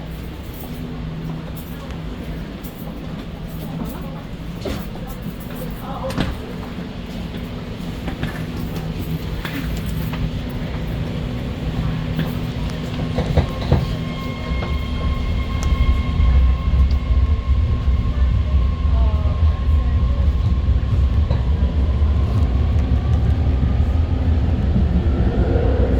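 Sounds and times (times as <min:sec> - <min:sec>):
train rumbling on rails: 0:00.0 - 0:25.9
high-pitched whine: 0:12.2 - 0:25.9.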